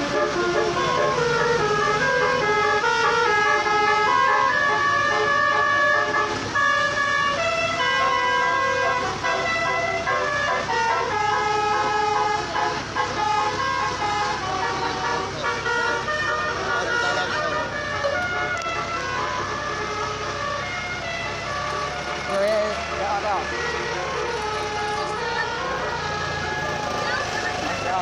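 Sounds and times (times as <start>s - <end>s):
multi-tone bus air horn melody: 0.0s - 28.0s.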